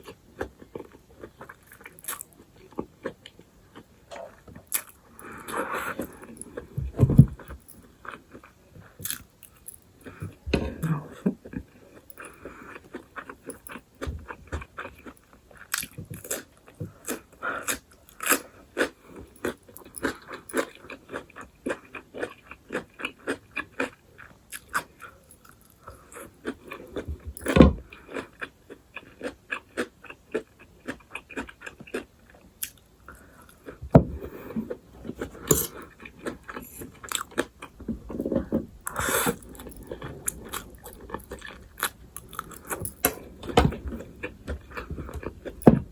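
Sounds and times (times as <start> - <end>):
chewing and crunching food: 0.0 - 45.9.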